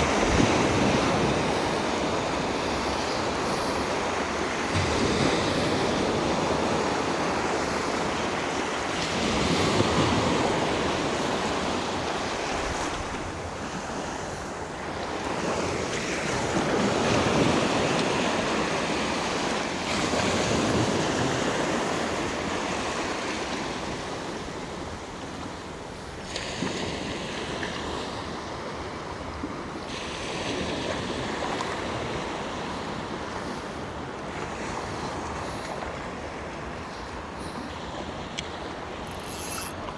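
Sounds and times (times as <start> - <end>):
wind on microphone: 0.0 - 25.4
sea waves breaking: 0.0 - 39.9.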